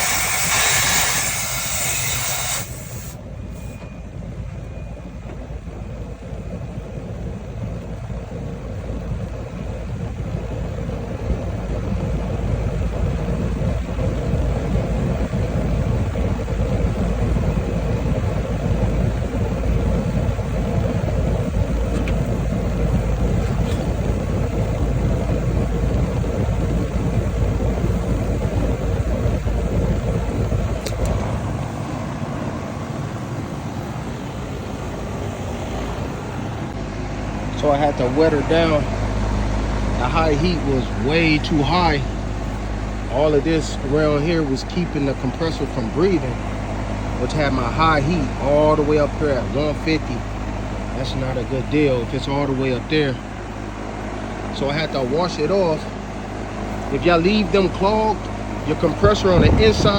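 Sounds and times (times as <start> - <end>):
loud hiss: 0.0 - 3.8
air conditioner unit humming: 0.0 - 59.9.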